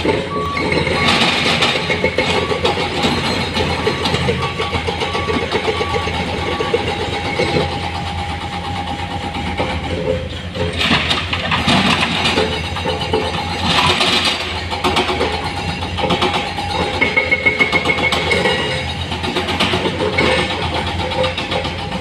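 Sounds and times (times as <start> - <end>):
heavy diesel machinery running: 0.0 - 22.0
repeating beep: 0.2 - 7.7.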